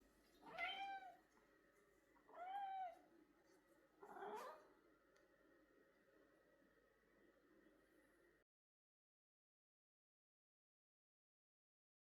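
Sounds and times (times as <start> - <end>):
cat meowing: 0.4 - 1.2, 2.3 - 3.0, 4.0 - 4.7.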